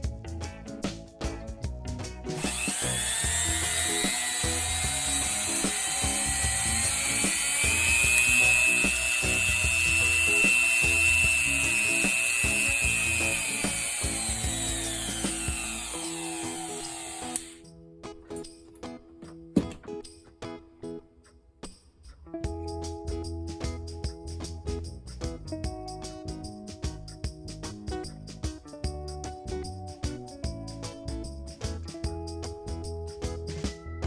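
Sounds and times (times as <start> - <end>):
background music: 0.0 - 34.0
rotary tool motor whine: 2.4 - 17.6.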